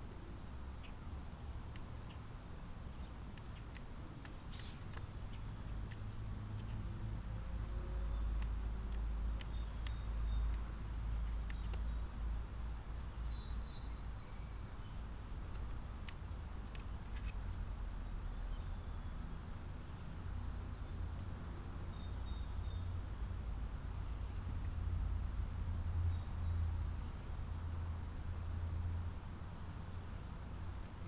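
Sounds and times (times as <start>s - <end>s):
steady low rumble: 0.0s - 31.0s
small birds chirping: 1.7s - 24.8s
sharp clicks: 3.3s - 6.8s, 8.2s - 12.3s, 15.4s - 17.7s.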